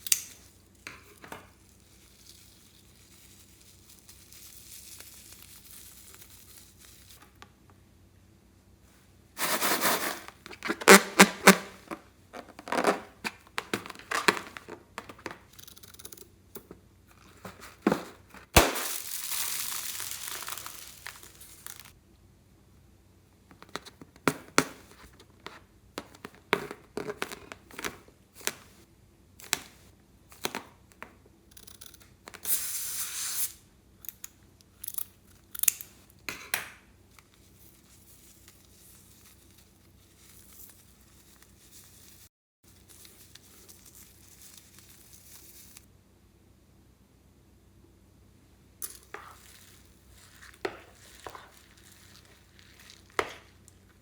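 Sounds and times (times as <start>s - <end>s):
crinkles: 0.0s - 7.5s, 9.4s - 16.0s, 17.1s - 22.0s, 37.1s - 45.9s, 48.8s - 54.0s
tearing noise: 18.5s - 21.9s.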